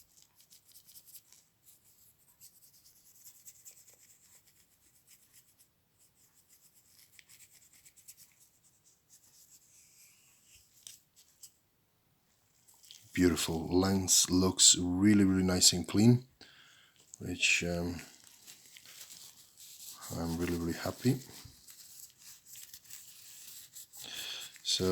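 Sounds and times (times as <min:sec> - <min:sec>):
hands handling plastic parts: 0:16.9 - 0:24.9.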